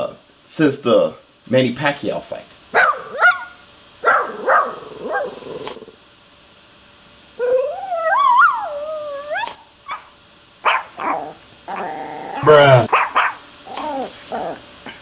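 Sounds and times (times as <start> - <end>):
dog yipping: 2.8 - 5.8, 7.4 - 14.6
dog whine-howl: 7.4 - 10.2, 11.0 - 12.9, 13.7 - 14.6.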